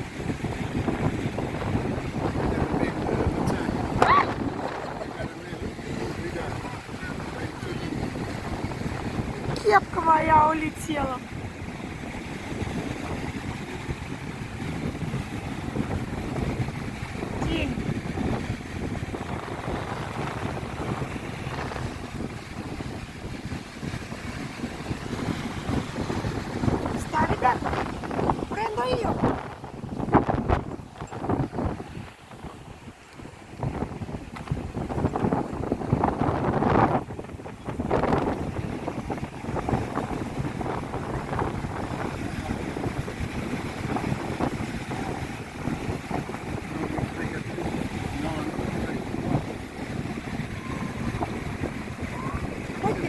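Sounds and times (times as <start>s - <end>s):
strong wind buffeting microphone: 0.0s - 53.0s.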